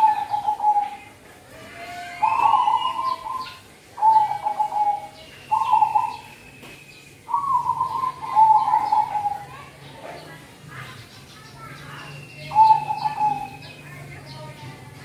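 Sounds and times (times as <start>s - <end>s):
dove cooing: 0.0s - 1.2s, 2.2s - 6.4s, 7.3s - 10.2s, 12.4s - 13.8s
faint high bird chirps: 2.2s - 14.6s.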